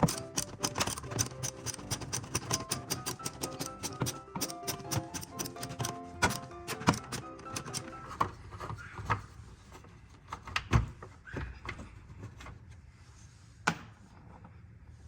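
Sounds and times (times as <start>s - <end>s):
screwdriver clicks and knocks on plastic: 0.0s - 8.4s.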